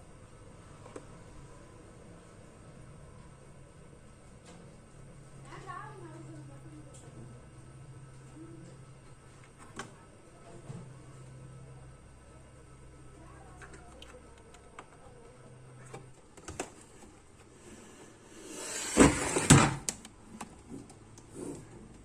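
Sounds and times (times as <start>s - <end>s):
rustling scrape: 17.6s - 19.5s.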